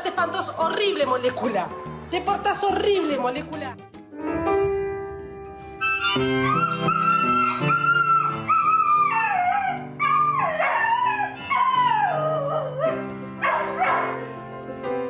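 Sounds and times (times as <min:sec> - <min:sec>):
background music: 0:00.0 - 0:15.0
dog howling: 0:06.5 - 0:14.2.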